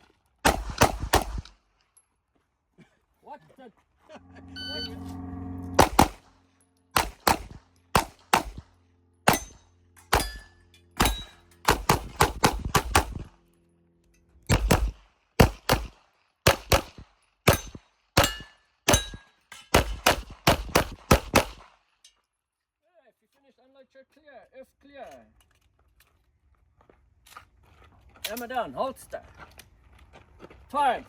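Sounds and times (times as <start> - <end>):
rapid handgun shots: 0.4 - 1.5, 5.8 - 6.2, 7.0 - 8.7, 9.3 - 13.3, 14.5 - 21.8.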